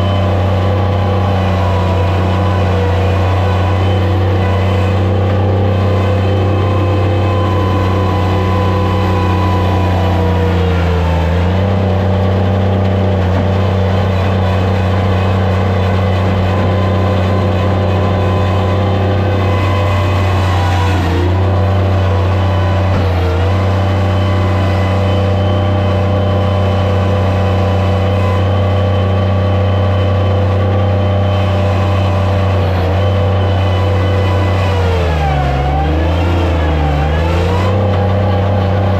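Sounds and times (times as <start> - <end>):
loader engine running: 0.0 - 38.9.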